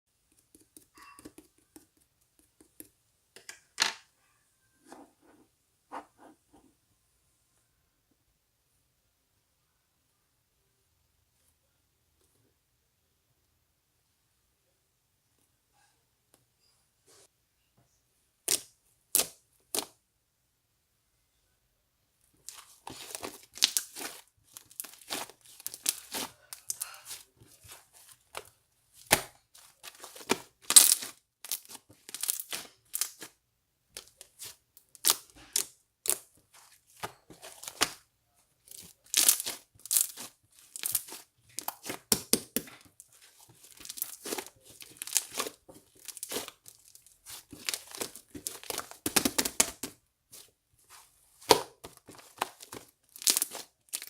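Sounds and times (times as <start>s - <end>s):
crinkling and tearing: 22.4s - 28.4s, 29.0s - 33.3s, 38.6s - 54.0s.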